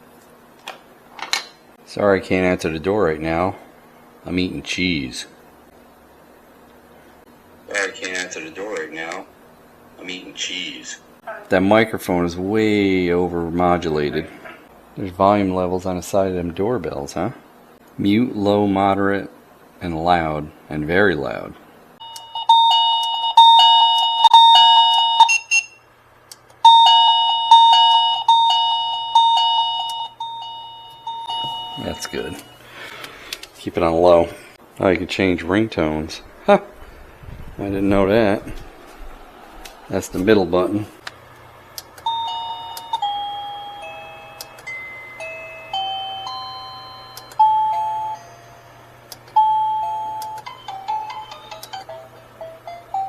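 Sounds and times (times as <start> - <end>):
doorbell chime ring tune: 22.0 - 25.8, 26.6 - 32.6, 42.0 - 53.0
short beep: 25.2 - 25.8.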